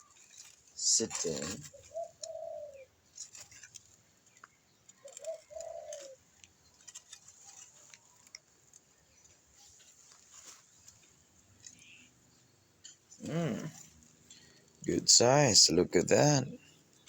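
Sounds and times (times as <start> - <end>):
faint clicks and scrapes: 0.0 - 14.9
dove cooing: 0.4 - 3.7, 5.0 - 6.2, 13.2 - 16.7.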